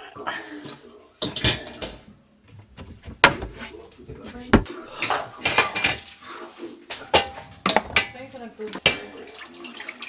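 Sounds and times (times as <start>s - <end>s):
kitchenware knocks and clinks: 1.2s - 2.1s, 4.5s - 6.1s, 7.0s - 9.2s.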